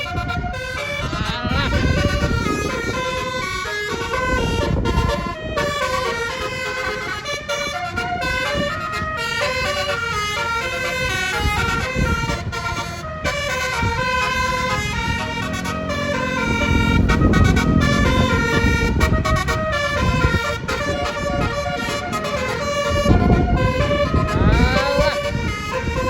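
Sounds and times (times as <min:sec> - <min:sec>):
bus horn playing a melody: 0:00.0 - 0:26.0
low rumble: 0:13.9 - 0:20.3.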